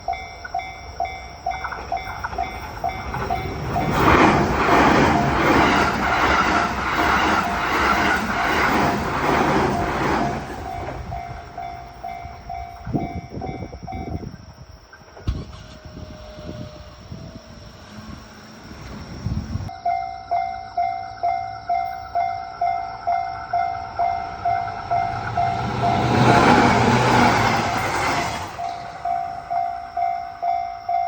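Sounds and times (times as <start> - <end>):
train wheels clattering over rails: 1.5 - 14.1, 24.6 - 29.1
level crossing alarm dinging: 19.7 - 31.0.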